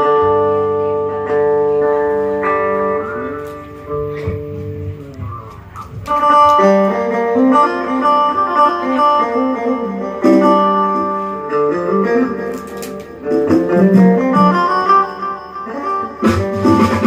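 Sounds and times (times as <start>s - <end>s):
guitar melody: 0.0s - 17.0s.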